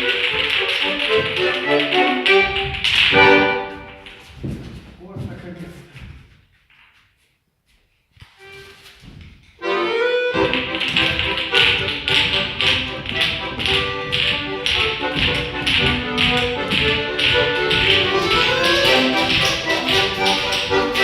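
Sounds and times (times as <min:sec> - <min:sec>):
sharp tapping on the beat: 0:00.0 - 0:04.7, 0:10.3 - 0:21.0
folk dance music: 0:00.0 - 0:06.2, 0:08.4 - 0:21.0.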